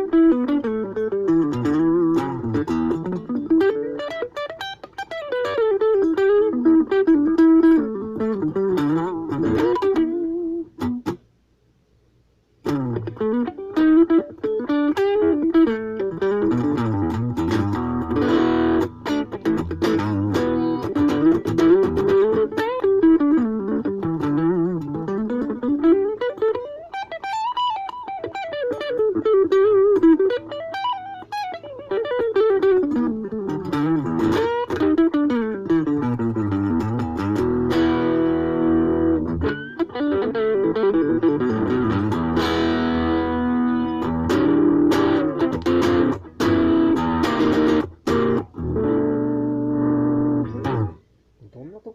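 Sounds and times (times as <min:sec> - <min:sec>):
electric guitar through an amp: 0:00.0 - 0:11.2, 0:12.6 - 0:51.9.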